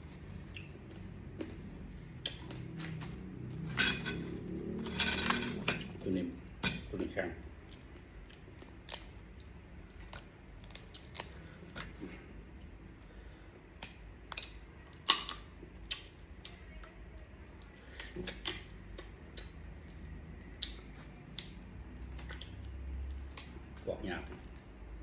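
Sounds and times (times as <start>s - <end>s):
crab shell cracking: 10.0s - 12.0s.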